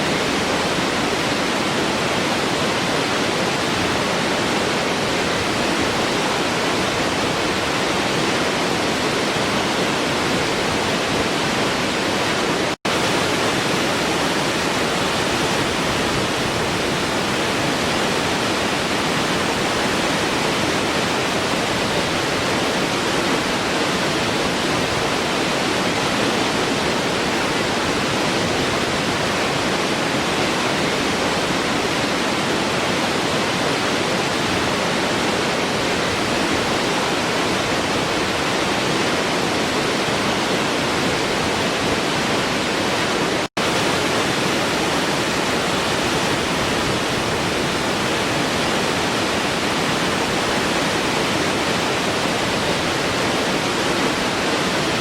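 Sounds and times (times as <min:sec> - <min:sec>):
waterfall roaring: 0:00.0 - 0:55.0.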